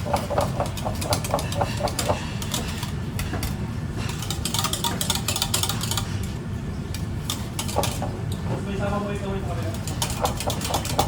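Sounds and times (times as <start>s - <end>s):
dishes and utensils clattering: 0.0s - 6.3s, 7.2s - 8.4s.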